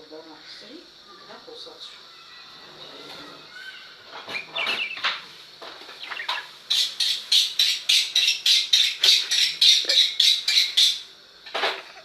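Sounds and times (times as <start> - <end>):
parrot squawking: 3.5 - 5.1, 5.9 - 11.0.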